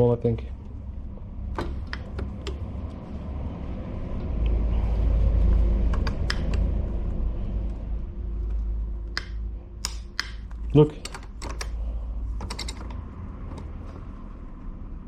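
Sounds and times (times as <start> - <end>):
low rumble: 0.5 - 10.8.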